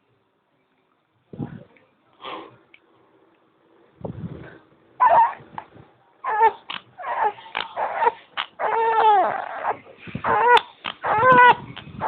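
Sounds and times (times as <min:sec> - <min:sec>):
dog whimpering: 0:06.2 - 0:12.0.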